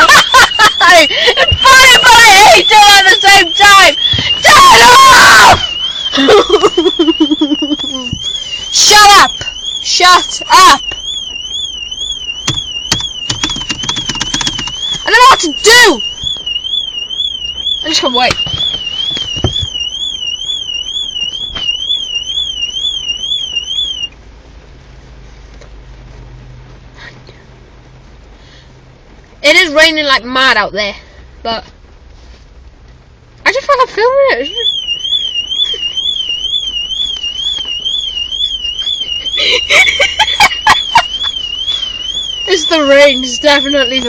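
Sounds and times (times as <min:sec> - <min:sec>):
car alarm siren warbling: 0:00.0 - 0:24.2, 0:34.3 - 0:44.0.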